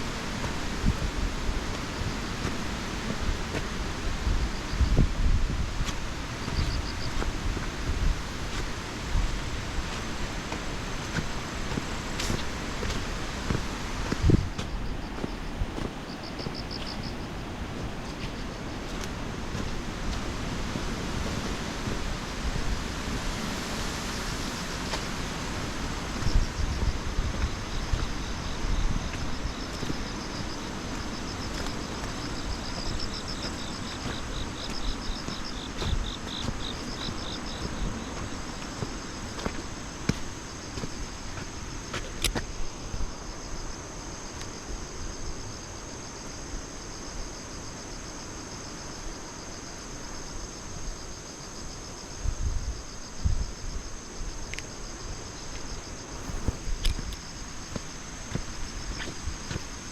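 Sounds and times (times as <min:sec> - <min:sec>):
wind noise on microphone: 0:00.0 - 0:45.6, 0:50.6 - 0:59.9
insects trilling: 0:00.0 - 0:59.9.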